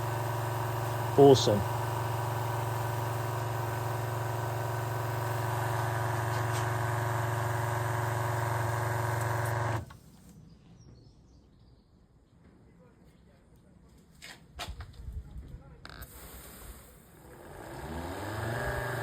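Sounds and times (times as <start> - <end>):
pump humming: 0.0 - 10.0, 17.3 - 19.0.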